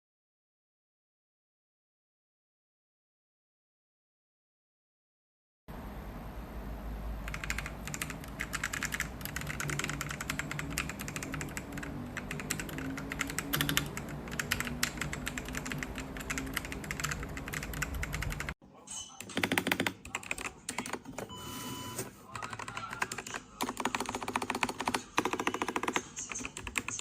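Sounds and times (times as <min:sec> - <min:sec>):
fast mechanical keyboard typing: 0:07.2 - 0:18.6, 0:19.2 - 0:21.3, 0:22.3 - 0:27.0.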